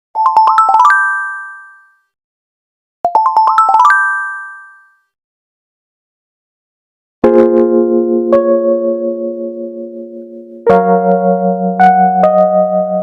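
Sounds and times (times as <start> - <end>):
bell-like chime jingle: 0.2 - 2.2, 3.1 - 5.2.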